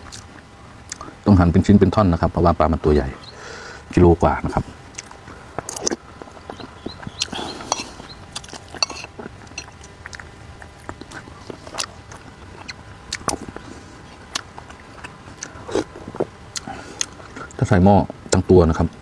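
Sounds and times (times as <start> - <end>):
chewing and mouth smacks: 0.0 - 1.2, 4.9 - 17.6.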